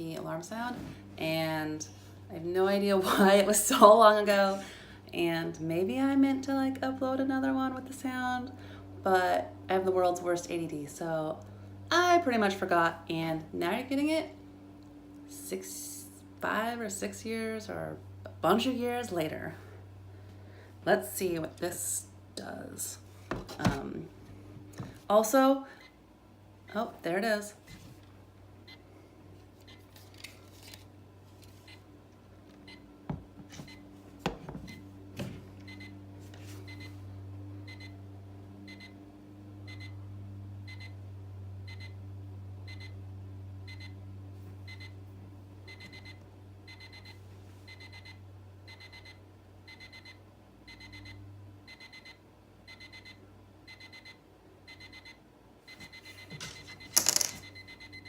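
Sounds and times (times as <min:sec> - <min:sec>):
alarm clock beeping: 0:35.7 - 0:35.9, 0:37.7 - 0:38.0, 0:38.7 - 0:39.0, 0:39.7 - 0:40.0, 0:40.7 - 0:40.9, 0:41.7 - 0:42.0, 0:42.7 - 0:43.0, 0:43.7 - 0:43.9, 0:44.7 - 0:45.0, 0:45.7 - 0:58.0.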